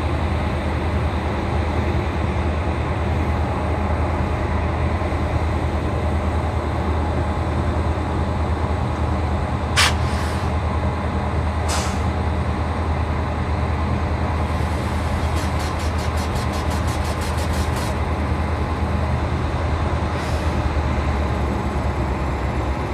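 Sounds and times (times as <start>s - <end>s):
locomotive whir and hum: 0.0s - 22.9s
short sharp hisses: 9.8s - 10.6s, 11.7s - 12.1s, 14.6s - 18.0s.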